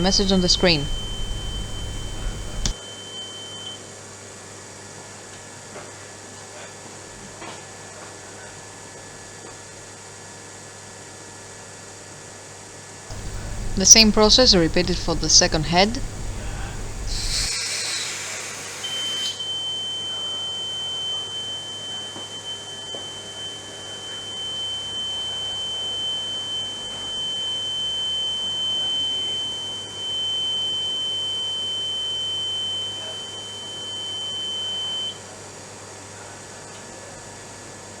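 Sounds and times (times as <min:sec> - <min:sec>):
high-pitched alarm tone: 0:00.0 - 0:02.8, 0:13.1 - 0:17.6
aerosol spray hiss: 0:17.1 - 0:17.6.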